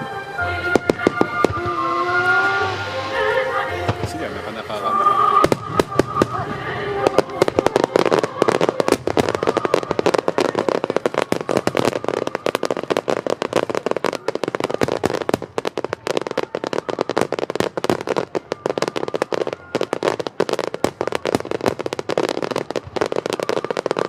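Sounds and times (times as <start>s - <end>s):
fireworks bangs and crackles: 0.0s - 24.0s.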